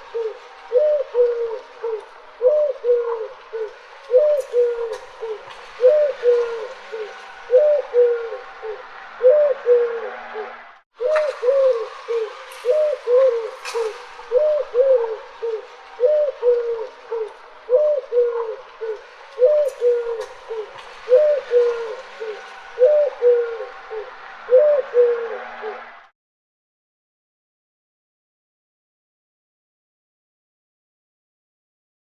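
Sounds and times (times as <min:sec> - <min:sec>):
dove cooing: 0:00.0 - 0:26.0.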